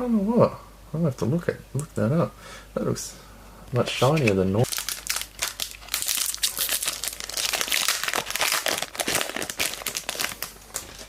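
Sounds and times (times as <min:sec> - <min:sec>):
card pack wrapper crinkling: 0:04.0 - 0:11.0.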